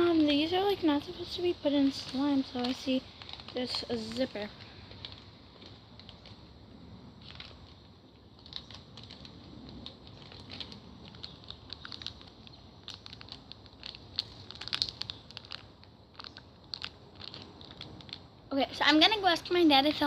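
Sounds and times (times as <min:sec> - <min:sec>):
plastic pouch crinkling: 0:00.0 - 0:20.0.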